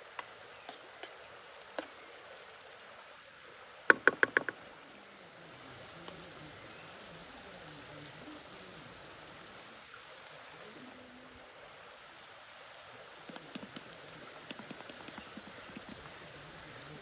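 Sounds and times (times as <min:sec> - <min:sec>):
faint steady hiss: 0:00.0 - 0:17.0
sharp knocks of hard objects: 0:03.9 - 0:04.6.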